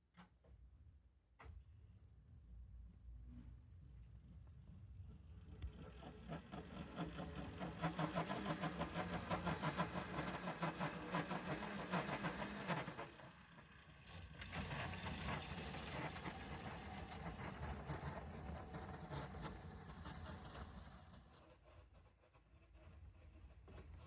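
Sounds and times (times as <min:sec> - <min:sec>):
small locomotive engine running: 0:05.2 - 0:24.0.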